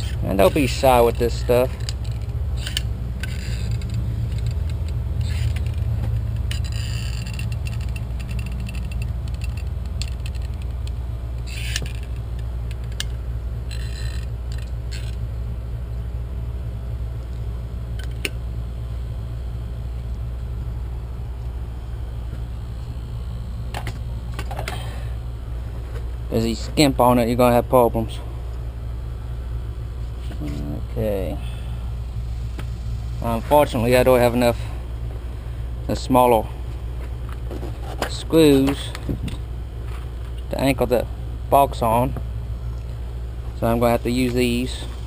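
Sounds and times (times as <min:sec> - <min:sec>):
steady low hum: 0:00.0 - 0:45.0
caulking gun clicks and scrapes: 0:01.7 - 0:15.2.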